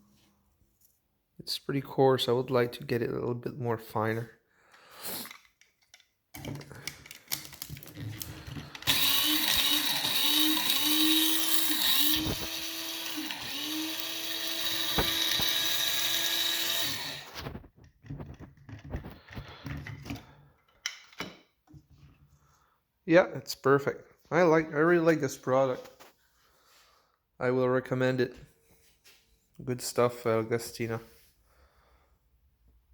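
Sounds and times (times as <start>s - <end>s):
grinder clicks and handling: 5.1s - 21.4s
electric coffee grinder motor: 8.1s - 17.5s.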